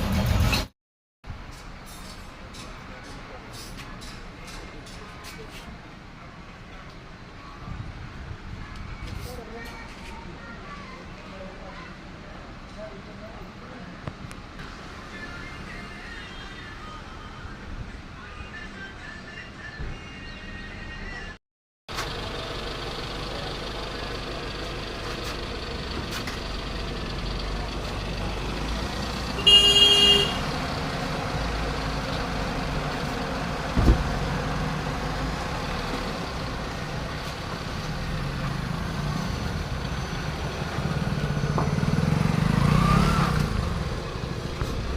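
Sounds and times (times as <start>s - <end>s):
vehicle engine rumble: 0.0s - 0.7s, 1.3s - 44.9s
street traffic: 0.0s - 44.9s
vehicle horn: 29.4s - 30.5s.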